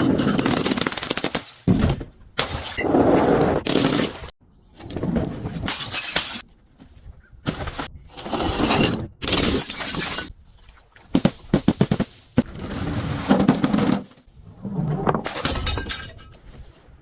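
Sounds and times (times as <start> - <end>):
glass bottles smashing: 5.7 - 6.4, 9.3 - 10.3, 15.3 - 16.4
glass cracks and clinks: 5.7 - 6.4, 15.4 - 16.4.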